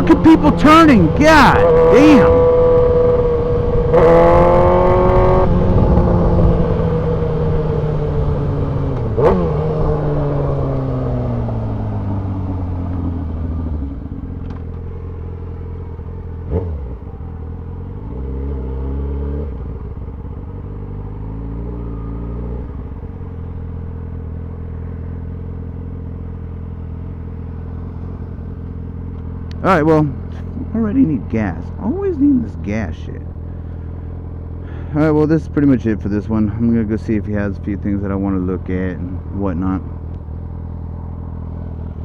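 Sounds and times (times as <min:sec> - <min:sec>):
motorcycle engine idling: 0:11.4 - 0:18.5, 0:19.6 - 0:42.0.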